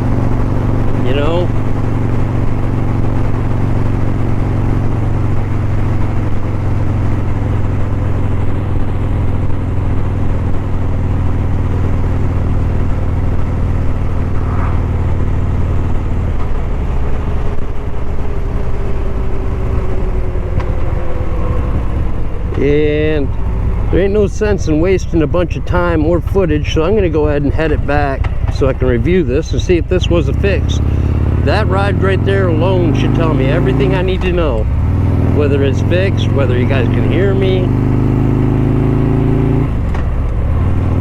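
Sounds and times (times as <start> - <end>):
motorcycle engine running: 0.0 - 41.0
wind rush: 13.4 - 30.0.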